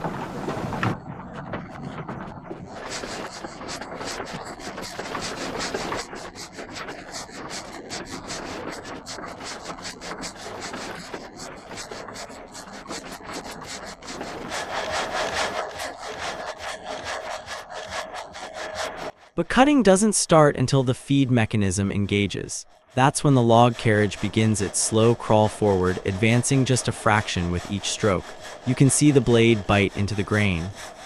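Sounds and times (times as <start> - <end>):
frame saw cutting a log: 0.0 - 20.0, 21.1 - 31.0
steady high whine: 13.9 - 31.0.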